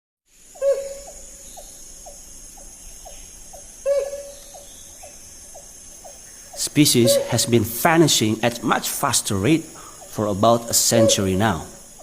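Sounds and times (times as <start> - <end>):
steady high hiss: 0.3 - 12.0
loud animal calls: 0.6 - 1.4, 3.2 - 4.6, 6.5 - 8.4, 9.7 - 12.0.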